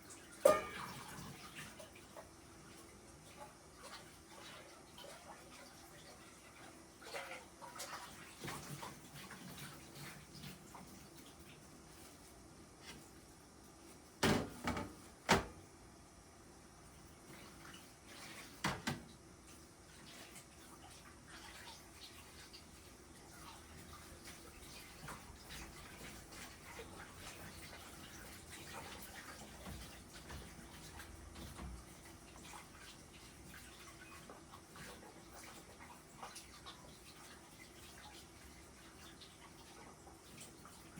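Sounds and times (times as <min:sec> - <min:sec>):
faint running water: 0:00.0 - 0:40.9
dishes clacking: 0:00.4 - 0:01.1.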